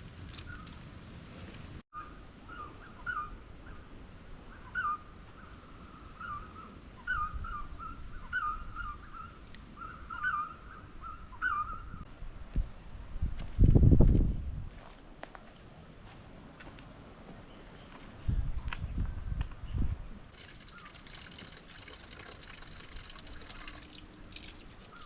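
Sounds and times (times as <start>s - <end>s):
bird calling in wavering notes: 2.0s - 3.8s, 6.0s - 12.0s.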